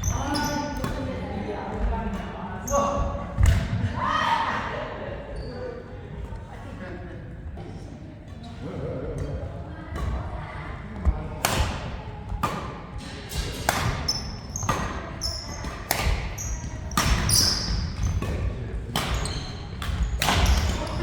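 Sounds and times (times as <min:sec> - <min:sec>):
shoes squeaking on court: 0:00.0 - 0:01.0, 0:14.0 - 0:21.0
rackets striking shuttlecock: 0:15.6 - 0:20.8.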